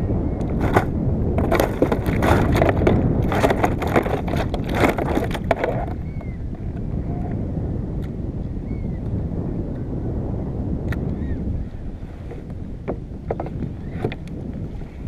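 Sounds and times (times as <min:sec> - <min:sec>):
wind buffeting microphone: 0:00.0 - 0:15.0
clattering knocks of hard gear: 0:00.6 - 0:06.0.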